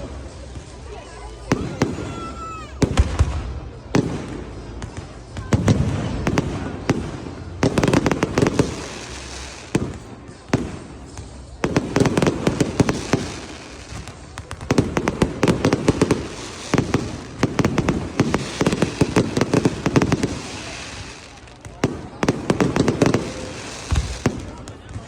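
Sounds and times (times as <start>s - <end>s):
fireworks bangs and crackles: 0.0s - 25.0s.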